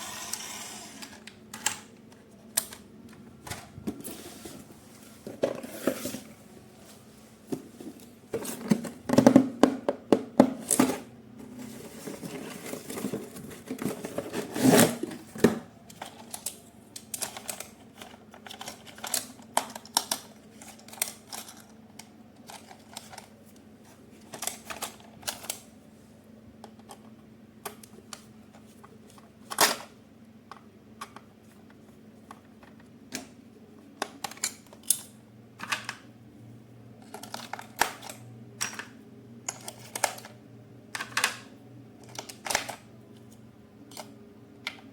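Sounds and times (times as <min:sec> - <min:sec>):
faint steady hum: 0:00.0 - 0:44.9
plastic toy clicking and rattling: 0:15.9 - 0:23.3.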